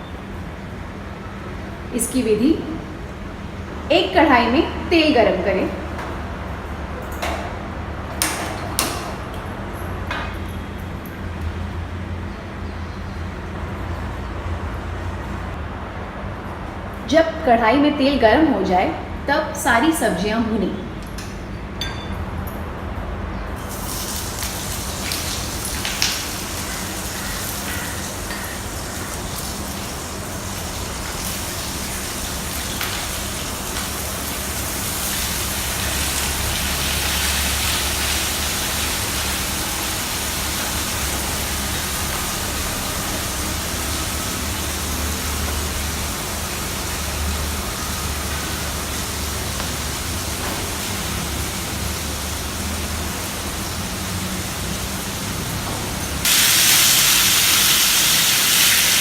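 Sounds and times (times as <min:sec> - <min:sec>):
vegetables sizzling in hot oil: 0:23.6 - 0:55.6, 0:56.2 - 0:59.0.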